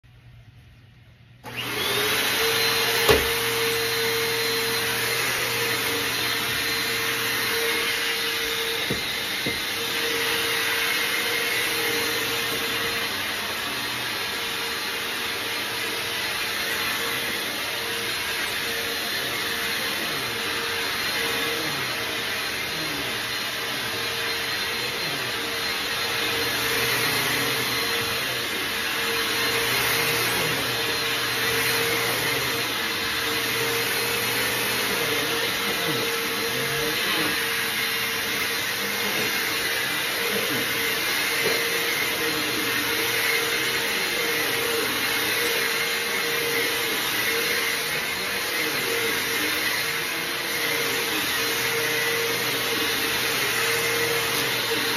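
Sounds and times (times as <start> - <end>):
vacuum cleaner running: 0.0 - 54.9.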